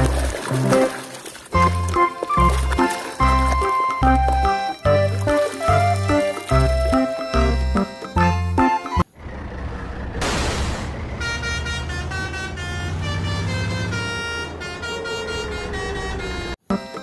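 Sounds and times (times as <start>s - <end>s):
background music: 0.0s - 9.1s
bus engine rumbling: 3.3s - 16.7s
multi-note horn tooting tune: 11.2s - 17.0s.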